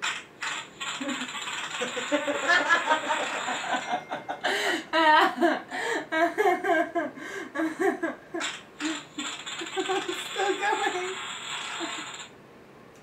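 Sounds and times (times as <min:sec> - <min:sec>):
person giggling: 0:01.0 - 0:11.2
fart sound effect: 0:08.4 - 0:12.3.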